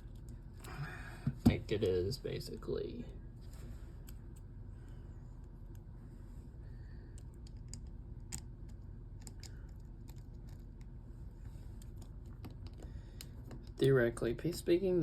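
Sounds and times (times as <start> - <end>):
small parts clicking and tapping: 0.0 - 1.9, 7.0 - 11.0, 11.6 - 14.6
low steady hum: 0.0 - 15.0.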